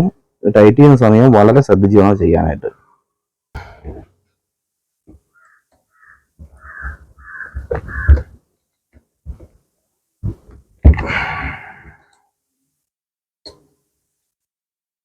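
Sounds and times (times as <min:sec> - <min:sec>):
bird calling: 0:02.6 - 0:03.1, 0:05.2 - 0:08.4.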